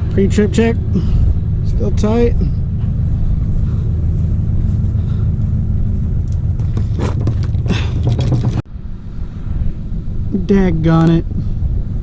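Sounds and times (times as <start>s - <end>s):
diesel engine idling: 0.0s - 8.6s
metallic clicks and rattles: 6.2s - 8.6s.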